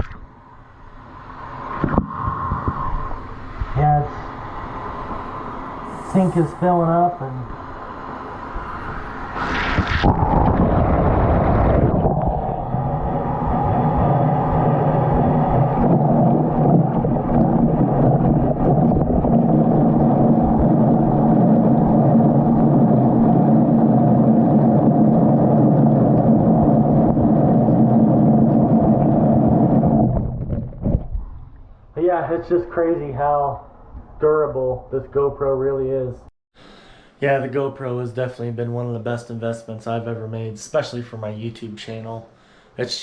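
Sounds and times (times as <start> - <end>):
muffled washing machine churning water: 10.2 - 31.0.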